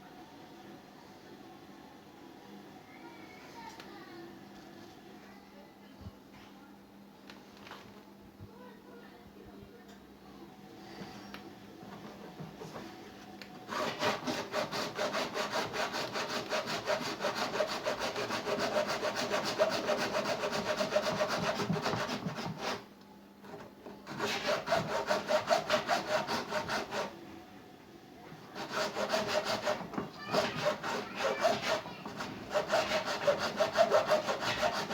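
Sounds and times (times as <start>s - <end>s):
hand saw cutting plastic: 13.7s - 22.9s, 23.5s - 27.1s, 28.5s - 34.9s.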